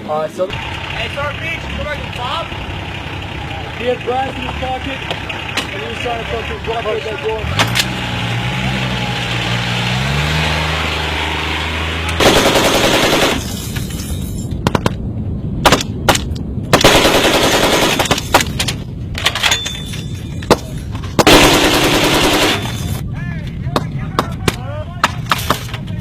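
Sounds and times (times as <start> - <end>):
machine gun fire: 12.2 - 13.5, 16.7 - 18.5, 21.2 - 22.9.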